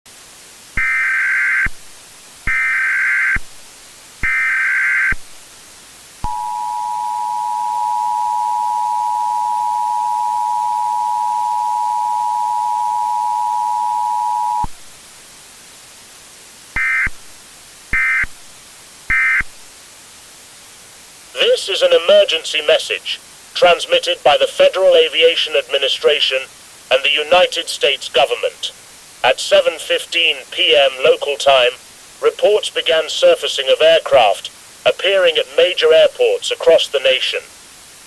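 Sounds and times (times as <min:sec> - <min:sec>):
steady hiss: 0:00.1 - 0:38.0
two-tone attention signal: 0:06.2 - 0:14.7.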